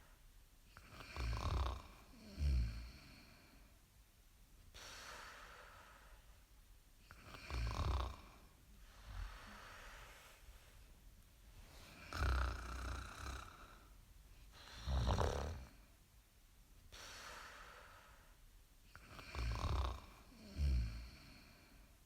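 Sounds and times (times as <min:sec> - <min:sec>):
person snoring: 0:00.8 - 0:03.4, 0:07.1 - 0:10.2, 0:11.9 - 0:13.9, 0:14.6 - 0:15.8, 0:19.0 - 0:21.7.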